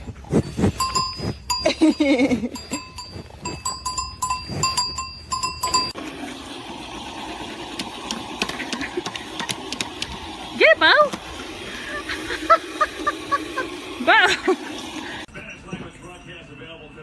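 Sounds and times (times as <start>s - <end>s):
bell clanging: 0.4s - 6.0s.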